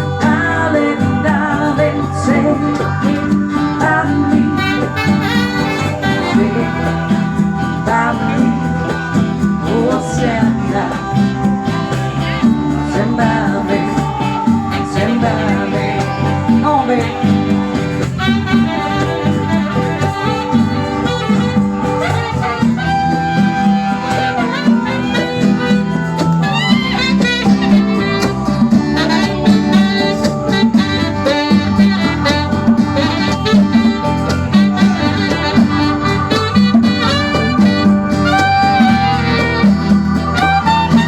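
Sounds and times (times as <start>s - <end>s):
live band playing: 0.0s - 41.0s.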